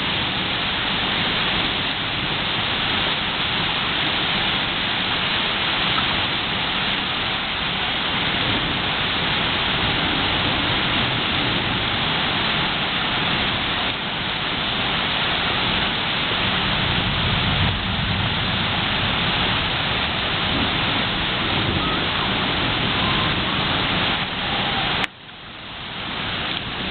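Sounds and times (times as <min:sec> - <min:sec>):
heavy rain pouring: 0:00.0 - 0:26.9
thunder rumbling: 0:16.4 - 0:25.1.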